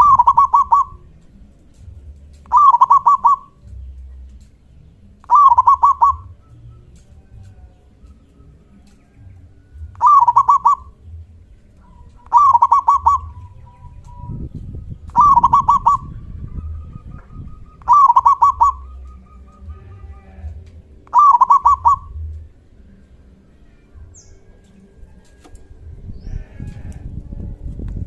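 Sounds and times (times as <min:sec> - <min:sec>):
dove cooing: 0:00.0 - 0:01.7, 0:02.3 - 0:03.7, 0:05.2 - 0:07.7, 0:09.8 - 0:11.0, 0:11.8 - 0:22.6.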